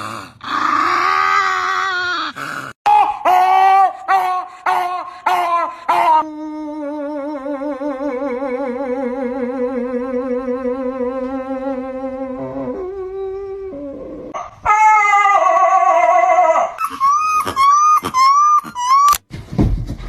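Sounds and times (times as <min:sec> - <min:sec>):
dog howling: 0:06.9 - 0:18.8.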